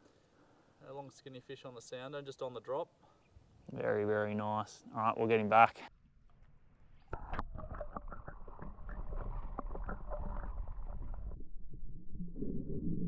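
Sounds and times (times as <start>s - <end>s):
water splashing and gurgling: 7.2s - 12.4s.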